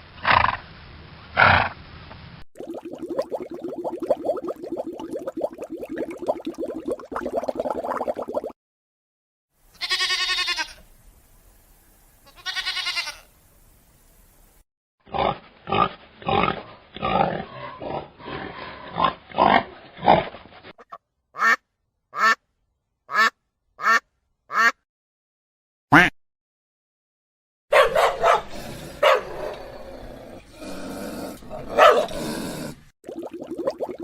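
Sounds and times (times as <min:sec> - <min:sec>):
short sharp animal barks: 0:27.7 - 0:29.3, 0:31.8 - 0:32.1.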